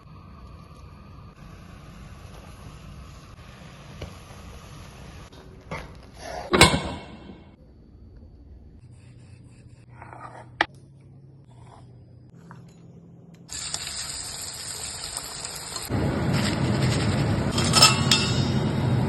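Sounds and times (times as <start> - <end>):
dough sizzling in hot oil: 13.5 - 17.6.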